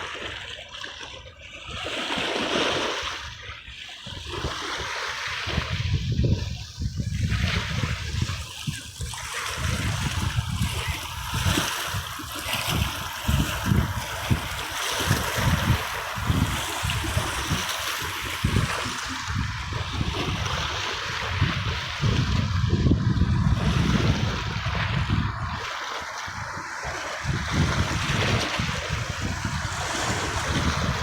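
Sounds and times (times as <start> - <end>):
sea waves splashing: 0.0 - 31.0
low thuds of waves: 1.7 - 31.0.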